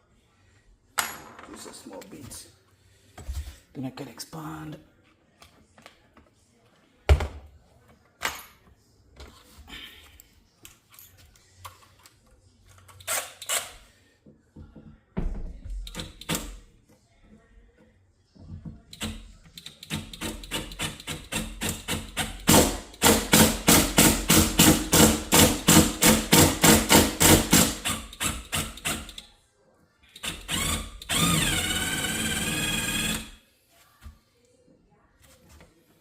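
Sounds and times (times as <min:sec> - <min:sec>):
electric drill boring wood: 0:21.3 - 0:29.1, 0:30.2 - 0:33.4.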